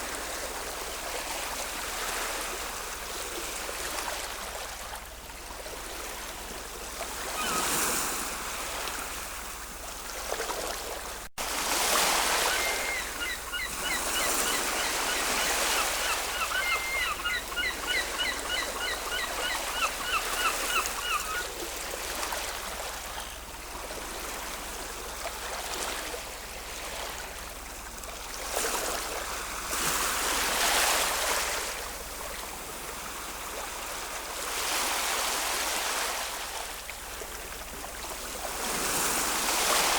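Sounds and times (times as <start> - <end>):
ocean waves washing: 0.0 - 39.9
rapid repeated bird calls: 12.2 - 21.5.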